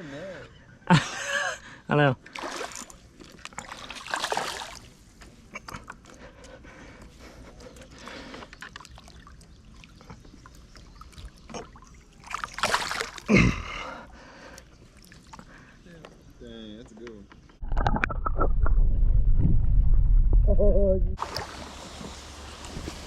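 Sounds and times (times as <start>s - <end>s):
water splashing and trickling: 2.2s - 5.2s, 7.6s - 15.7s, 21.2s - 23.0s.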